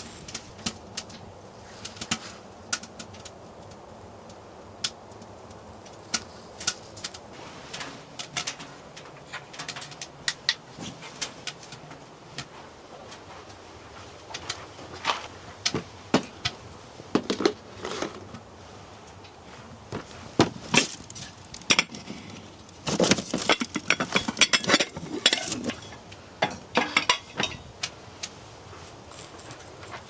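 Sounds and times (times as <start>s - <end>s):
cookware clinking and knocking: 23.0s - 27.6s.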